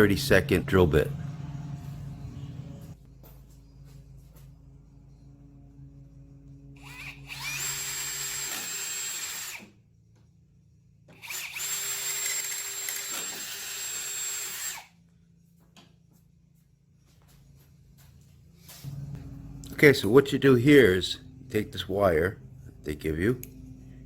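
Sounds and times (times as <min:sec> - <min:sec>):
electric drill whining: 0:06.8 - 0:09.8, 0:11.1 - 0:15.0.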